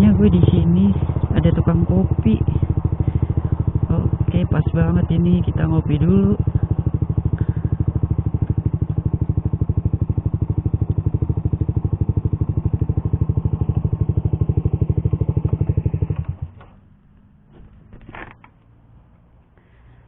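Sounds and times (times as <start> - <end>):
motorcycle engine idling: 0.0 - 20.0.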